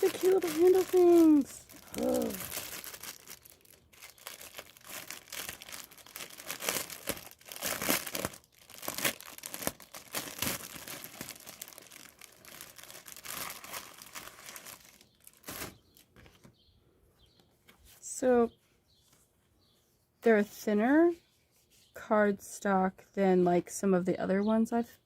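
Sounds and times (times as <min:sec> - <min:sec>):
packaging crinkling and rustling: 0:00.0 - 0:16.5.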